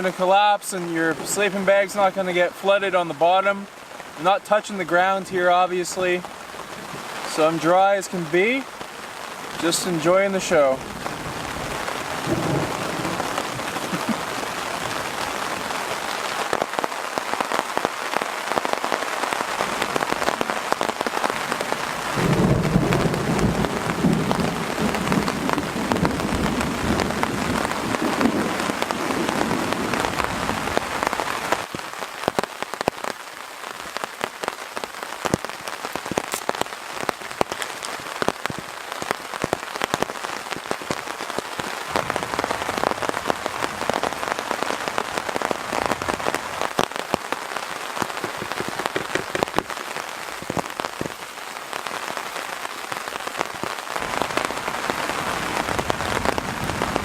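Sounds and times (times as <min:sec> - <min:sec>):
heavy rain falling: 0:00.0 - 0:57.0
raindrops ticking: 0:00.0 - 0:57.0
low thunder rumble: 0:10.8 - 0:15.6, 0:22.1 - 0:30.8.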